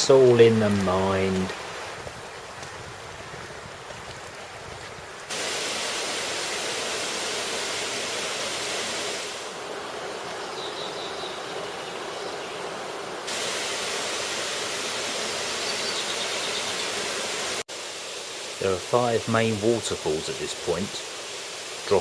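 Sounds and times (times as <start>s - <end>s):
waterfall rushing: 5.2s - 22.0s.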